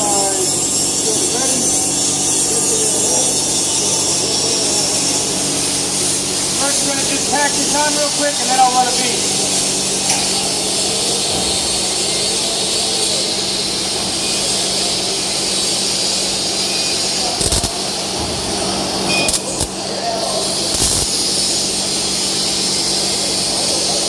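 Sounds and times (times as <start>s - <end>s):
welding arc crackling hiss: 5.0s - 24.0s
welding pops: 17.4s - 18.2s, 19.1s - 19.8s, 20.7s - 21.4s.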